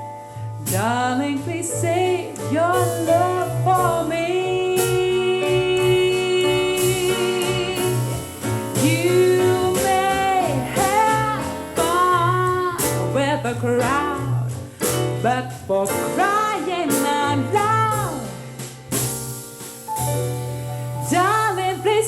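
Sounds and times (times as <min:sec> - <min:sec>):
instrumental backing: 0:00.0 - 0:22.0
person singing: 0:00.7 - 0:08.1, 0:08.8 - 0:18.4.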